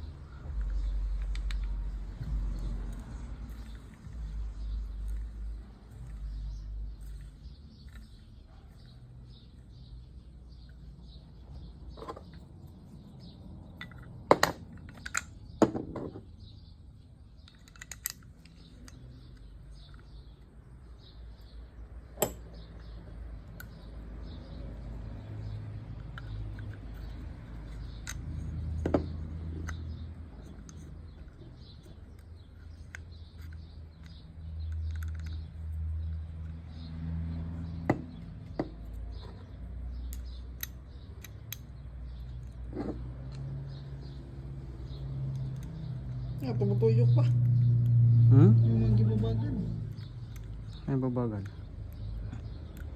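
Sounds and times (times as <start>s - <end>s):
clinks of small metal parts: 0.0s - 16.7s, 17.3s - 36.9s, 37.8s - 44.2s, 49.9s - 52.9s.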